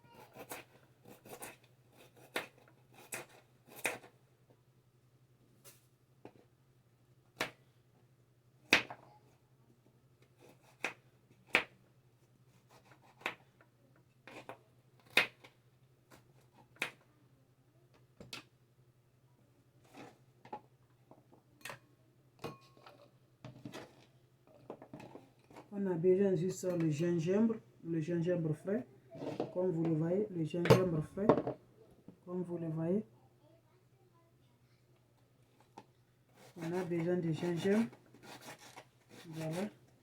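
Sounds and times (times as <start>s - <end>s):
knife cutting on a cutting board: 0.2s - 4.1s, 36.3s - 39.8s.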